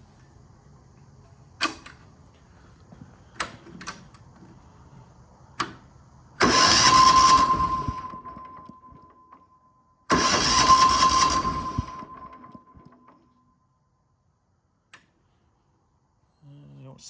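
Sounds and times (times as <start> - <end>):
steady whine: 1.6 - 9.1, 10.1 - 13.2
diesel engine cranking: 6.4 - 8.7, 10.1 - 12.8.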